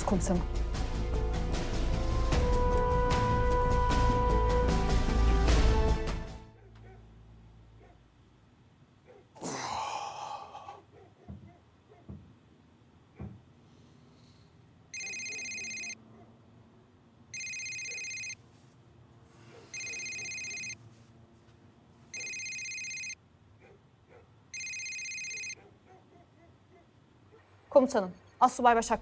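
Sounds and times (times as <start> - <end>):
telephone ringing: 15.0 - 16.0, 17.3 - 18.4, 19.7 - 20.8, 22.1 - 23.2, 24.5 - 25.6.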